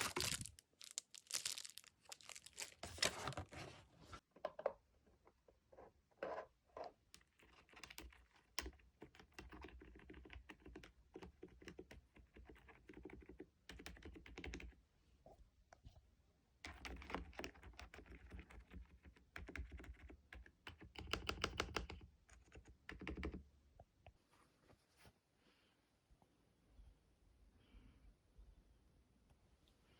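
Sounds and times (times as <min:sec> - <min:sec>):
mechanical keyboard typing: 0:07.2 - 0:14.8, 0:16.7 - 0:23.4.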